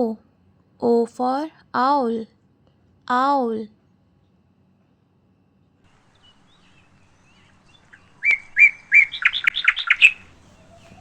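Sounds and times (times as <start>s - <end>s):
bird chirping: 5.9s - 11.0s.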